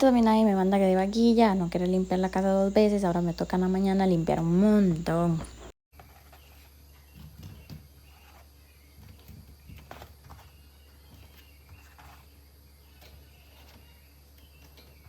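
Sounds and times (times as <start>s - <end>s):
low steady hum: 0.0s - 5.8s.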